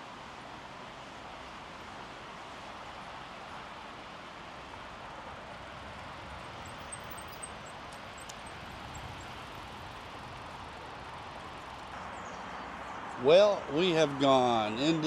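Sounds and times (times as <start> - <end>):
bicycle tyre hum: 4.6 - 12.3.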